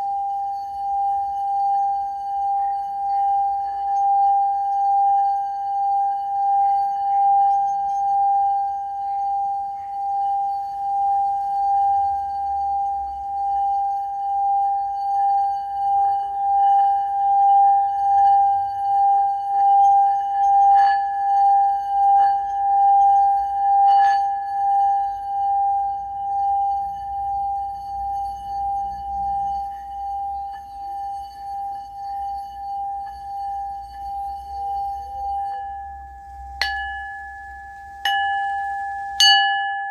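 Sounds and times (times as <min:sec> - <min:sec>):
singing bowl ringing: 0:00.0 - 0:39.9
sharp singing bowl strikes: 0:35.4 - 0:39.9.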